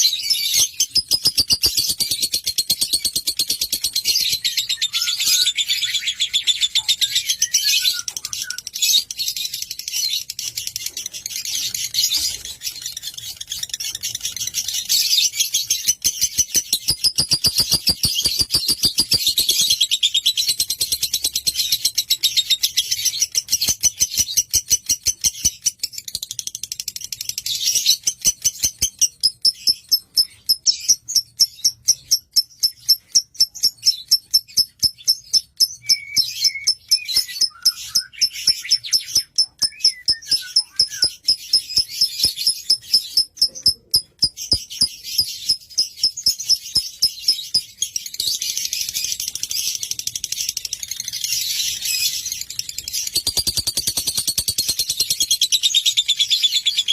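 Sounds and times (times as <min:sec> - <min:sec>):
lovebird chirping: 0:00.0 - 0:56.9.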